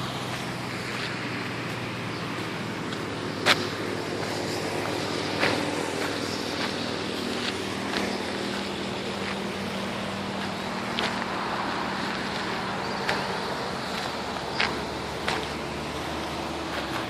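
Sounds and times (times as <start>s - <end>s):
engine hum: 0.0s - 17.0s
traffic noise: 0.0s - 17.0s.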